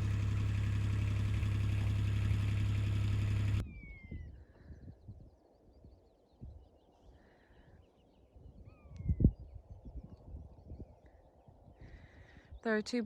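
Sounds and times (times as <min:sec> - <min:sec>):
vehicle engine idling: 0:00.0 - 0:03.6
faint birdsong: 0:00.0 - 0:13.0.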